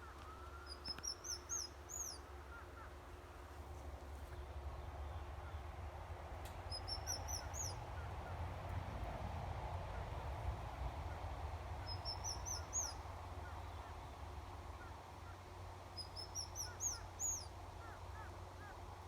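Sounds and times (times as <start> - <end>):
baby bird cheeping: 0.5 - 2.2, 6.7 - 7.8, 11.8 - 13.0, 16.0 - 17.5.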